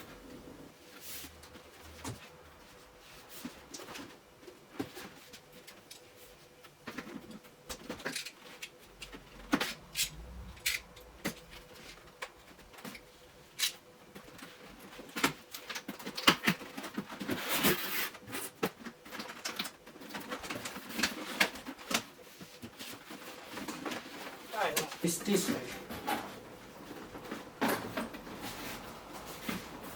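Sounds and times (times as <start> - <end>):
plastic parts clicking and knocking: 6.8 - 13.0.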